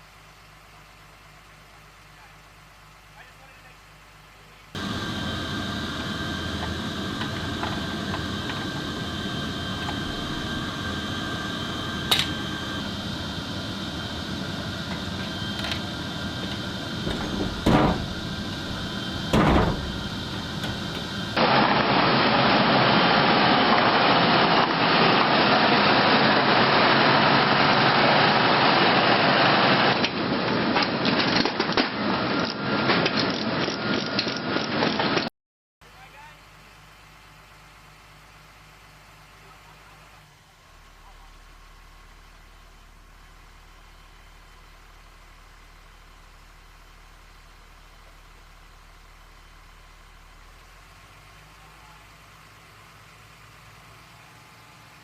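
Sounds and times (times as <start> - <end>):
faint steady tones: 4.4 - 21.4
steady mechanical noise: 4.7 - 35.3
low thumps: 17.0 - 21.2.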